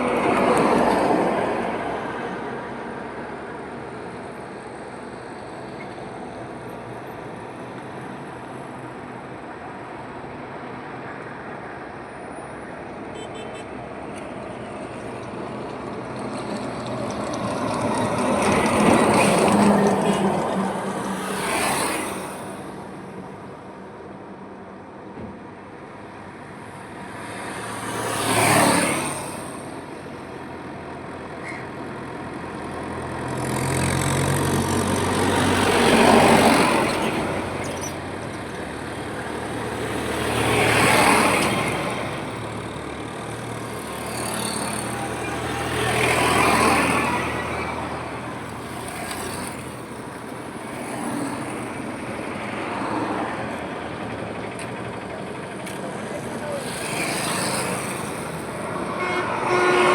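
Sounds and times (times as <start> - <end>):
steady road noise: 0.0 - 59.9
vehicles passing: 0.0 - 59.9.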